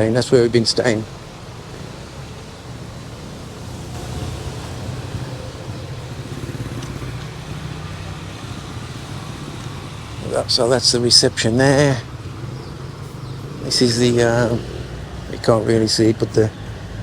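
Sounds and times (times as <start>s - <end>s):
road noise: 0.0s - 17.0s
vehicle engine running: 1.1s - 17.0s.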